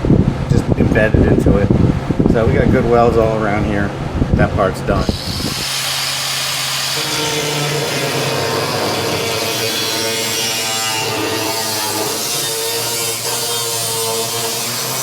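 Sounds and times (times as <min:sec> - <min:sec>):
angle grinder grinding steel: 0:05.0 - 0:15.0.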